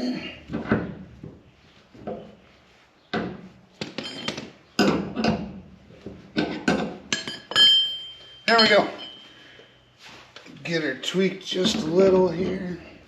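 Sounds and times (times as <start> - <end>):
hand tools clanking on steel: 3.2 - 5.5, 6.3 - 9.6.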